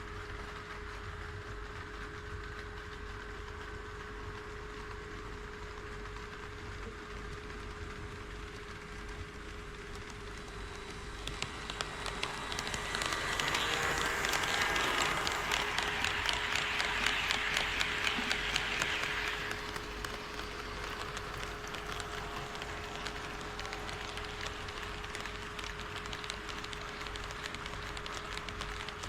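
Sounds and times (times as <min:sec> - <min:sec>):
model train wheels rattling: 0:08.5 - 0:29.0
steady hum: 0:09.5 - 0:26.5.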